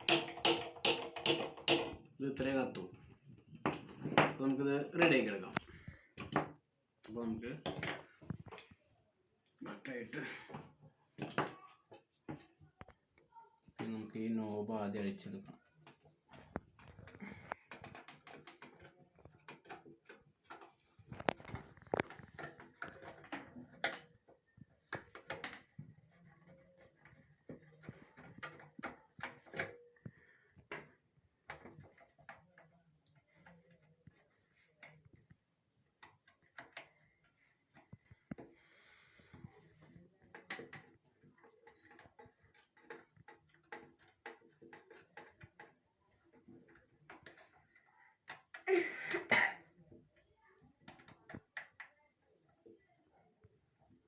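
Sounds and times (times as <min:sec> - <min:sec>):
clicks and taps of stove parts: 0:00.0 - 0:02.0.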